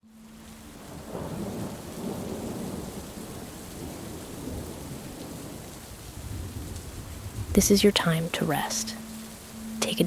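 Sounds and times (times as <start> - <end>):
steady rain: 0.0 - 10.0
rolling thunder: 0.9 - 7.6.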